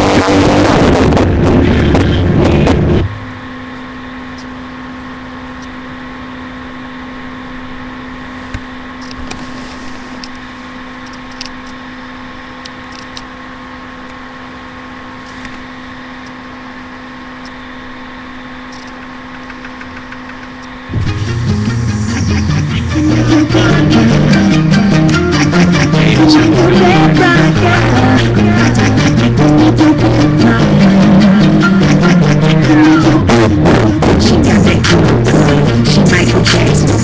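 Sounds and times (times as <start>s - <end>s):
music: 0.0s - 3.1s, 20.9s - 37.0s
electrical hum with pitched drone: 0.0s - 37.0s.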